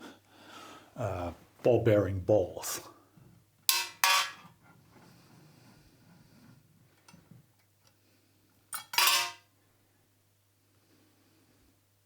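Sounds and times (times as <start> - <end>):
steel balls spilling into a tray: 8.8 - 9.4.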